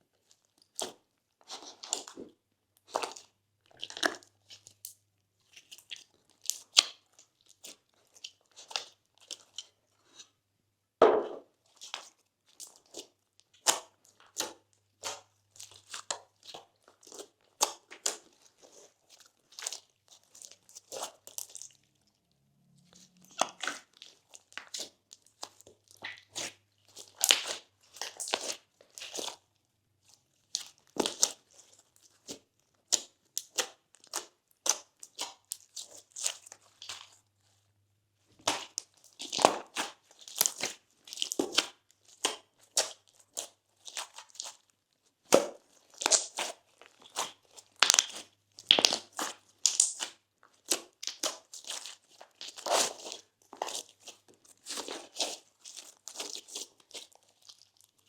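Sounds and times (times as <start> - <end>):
crunchy slime being squeezed: 23.2 - 29.4, 38.4 - 58.0.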